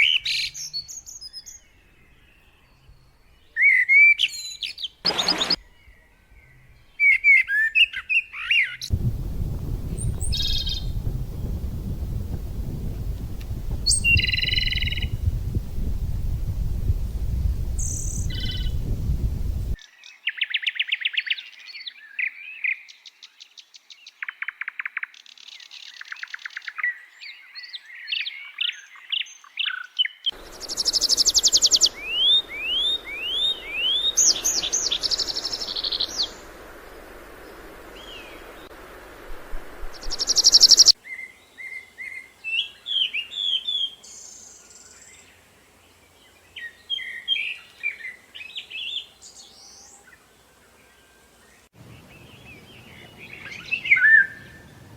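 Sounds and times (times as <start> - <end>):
songbirds singing: 0.0 - 38.8, 40.0 - 54.9
steady hiss: 8.9 - 19.8, 30.4 - 41.0.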